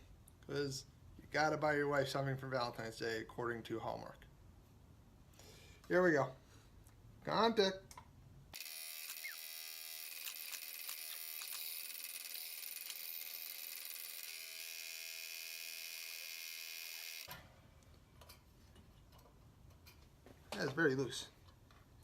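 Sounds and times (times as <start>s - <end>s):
electric saw cutting wood: 8.6s - 17.3s.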